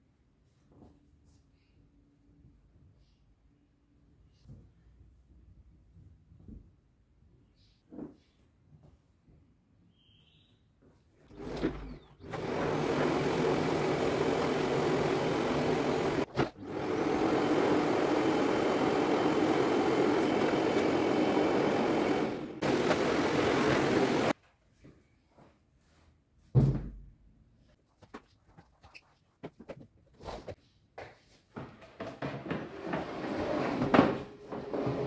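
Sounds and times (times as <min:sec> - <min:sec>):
vacuum cleaner motor running: 0:11.3 - 0:24.4
thump: 0:26.5 - 0:27.1.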